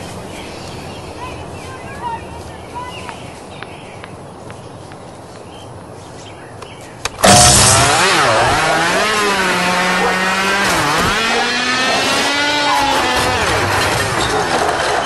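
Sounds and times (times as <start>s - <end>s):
small engine buzzing: 7.2s - 14.8s.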